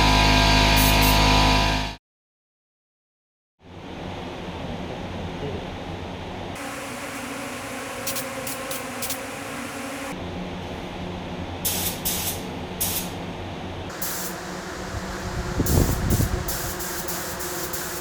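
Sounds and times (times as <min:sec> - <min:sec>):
spray can bursts: 0:06.6 - 0:10.2, 0:11.7 - 0:13.1, 0:13.9 - 0:18.0
steady low hum: 0:06.6 - 0:10.2, 0:13.9 - 0:18.0.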